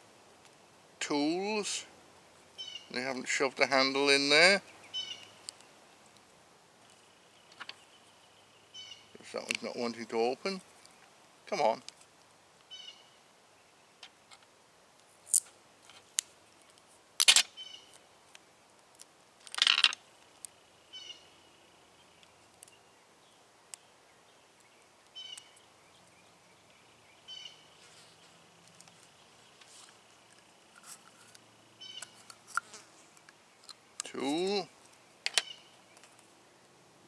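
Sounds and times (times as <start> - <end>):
clicks and knocks handling tools: 35.2 - 36.2.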